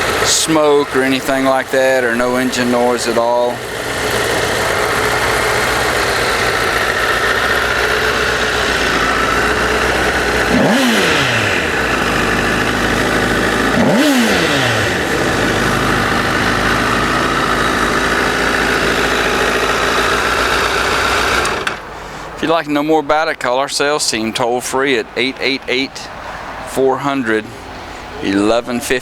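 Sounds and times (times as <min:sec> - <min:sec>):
motorcycle engine idling: 0:00.0 - 0:22.7
engine throttle blips: 0:00.0 - 0:29.0.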